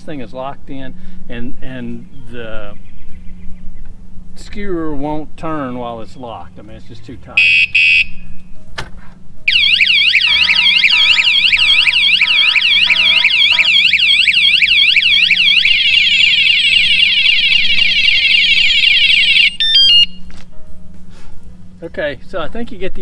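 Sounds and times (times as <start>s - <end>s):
bicycle alarm siren: 7.4s - 8.1s, 9.5s - 20.2s
short electronic beeps: 9.5s - 15.2s.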